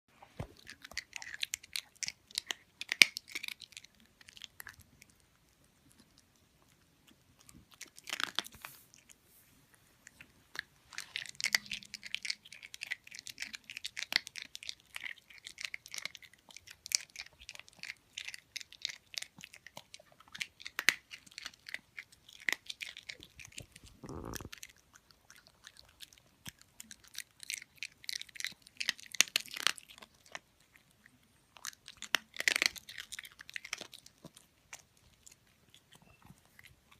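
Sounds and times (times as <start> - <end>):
crunchy chewing: 10.0 - 36.9.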